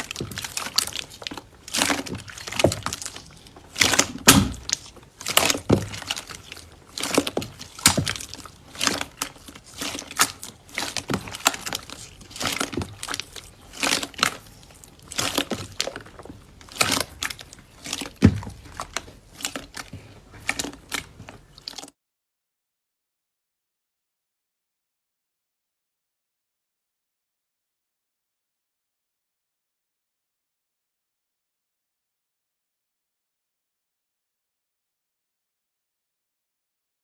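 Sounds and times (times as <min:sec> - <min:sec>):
slime crackling and popping: 0:00.0 - 0:21.9.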